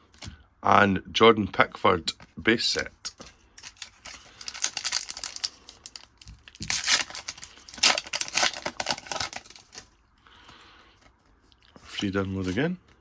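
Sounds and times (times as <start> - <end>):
foil wrapper tearing and crinkling: 3.1 - 9.9.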